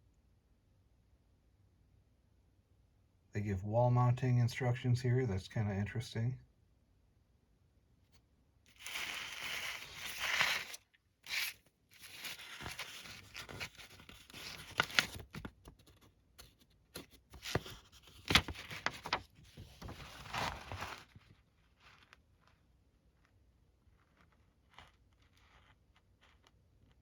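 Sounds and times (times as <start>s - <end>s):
paper pages rustling: 8.7s - 22.2s.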